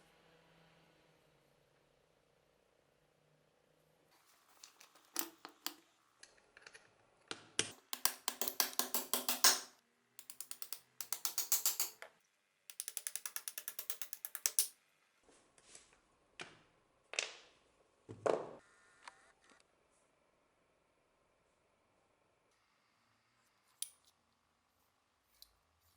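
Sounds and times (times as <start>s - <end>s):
metallic clicks and knocks: 4.6s - 5.8s, 7.6s - 12.1s, 12.7s - 14.7s
metal ratchet clicking: 7.7s - 12.0s, 12.7s - 14.7s.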